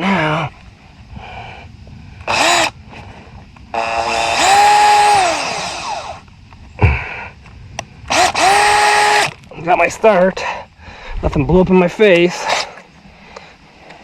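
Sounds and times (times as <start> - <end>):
power drill whine: 2.2 - 3.0, 3.7 - 6.3, 8.1 - 9.5.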